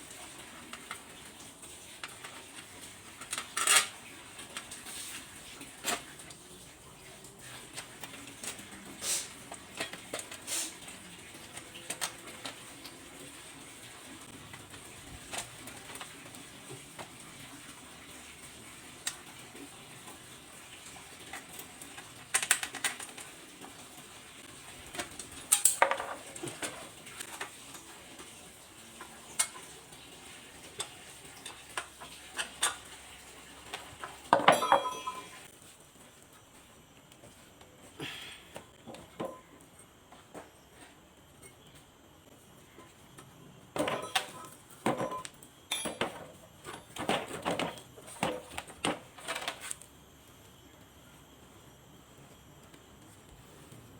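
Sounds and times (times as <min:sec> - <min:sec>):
metal parts and tools clinking: 0:34.4 - 0:35.5.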